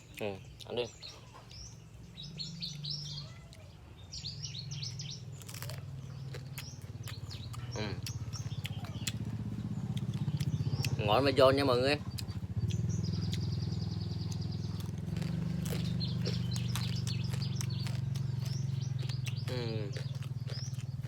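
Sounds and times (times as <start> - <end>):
small birds chirping: 0.0 - 21.0
low engine drone: 5.9 - 21.0.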